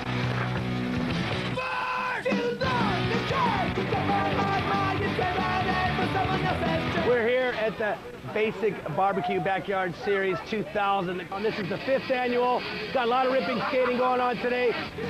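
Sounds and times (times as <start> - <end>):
punk rock music: 0.0 - 7.8, 10.8 - 15.0
shouted vocals: 1.5 - 11.5.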